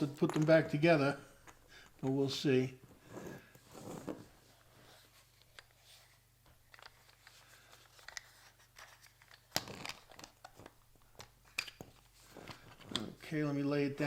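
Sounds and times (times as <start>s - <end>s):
plastic housing clicking and scraping: 5.4s - 13.2s.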